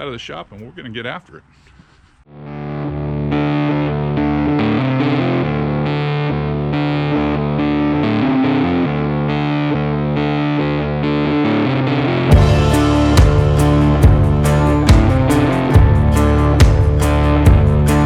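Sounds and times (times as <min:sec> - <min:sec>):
distorted electric guitar chords: 0:02.3 - 0:18.0.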